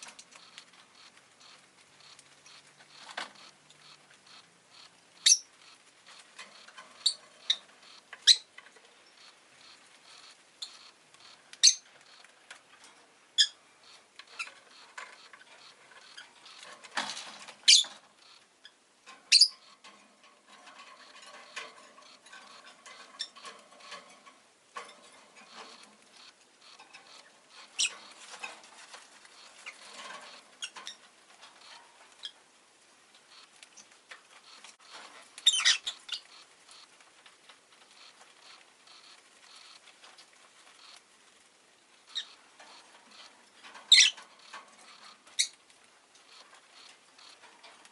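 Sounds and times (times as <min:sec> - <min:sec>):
soft scratching and rustling: 0:00.0 - 0:47.9
lovebird chirping: 0:00.1 - 0:12.3, 0:13.4 - 0:16.7, 0:17.6 - 0:19.8, 0:25.6 - 0:28.2, 0:35.4 - 0:36.8, 0:42.1 - 0:42.4, 0:43.1 - 0:45.6.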